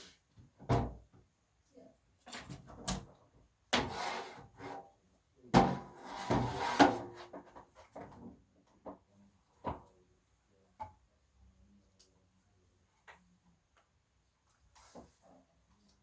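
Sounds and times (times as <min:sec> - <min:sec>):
objects scraping on hard surface: 0:03.8 - 0:04.9, 0:05.6 - 0:08.0.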